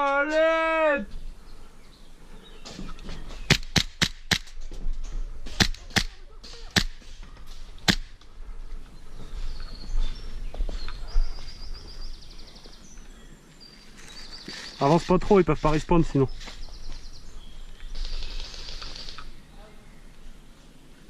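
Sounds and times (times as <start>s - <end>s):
airsoft pistol shots: 3.5s - 4.5s, 5.6s - 7.0s, 7.8s - 8.1s.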